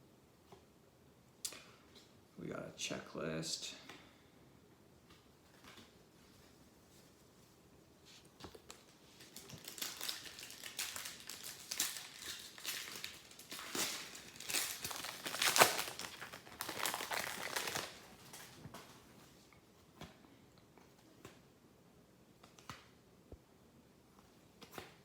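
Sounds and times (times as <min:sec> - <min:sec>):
foil wrapper crinkling: 0:08.6 - 0:18.9.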